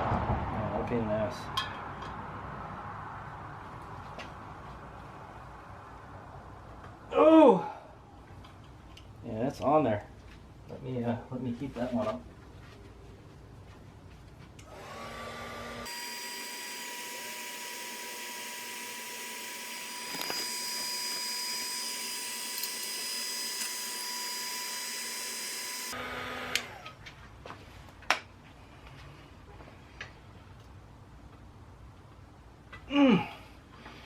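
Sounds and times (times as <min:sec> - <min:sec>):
heat gun fan whine: 0:14.6 - 0:27.0.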